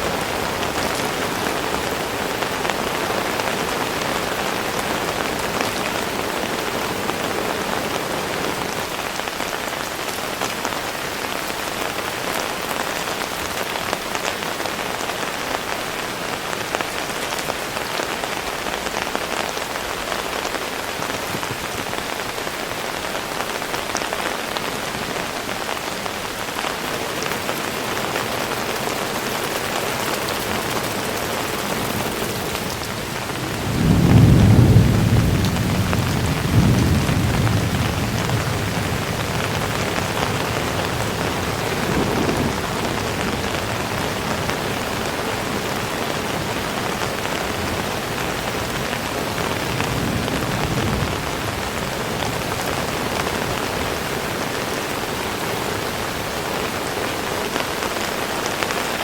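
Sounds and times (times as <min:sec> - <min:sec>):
heavy rain falling: 0:00.0 - 0:59.0
low rumble of thunder: 0:30.0 - 0:45.2, 0:47.4 - 0:53.8.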